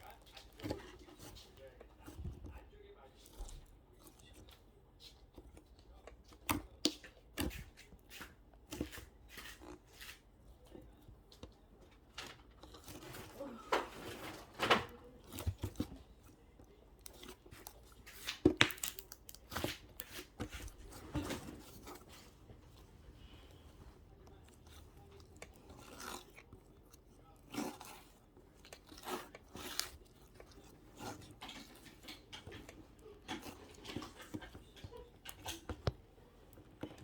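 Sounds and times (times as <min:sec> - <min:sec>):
crinkling or tearing: 0:12.1 - 0:23.1, 0:24.0 - 0:35.8.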